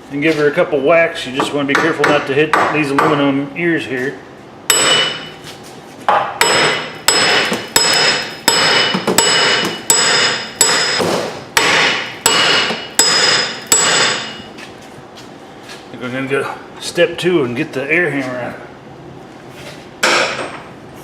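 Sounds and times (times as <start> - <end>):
hammer striking metal hub: 4.7 - 5.3, 6.1 - 14.5.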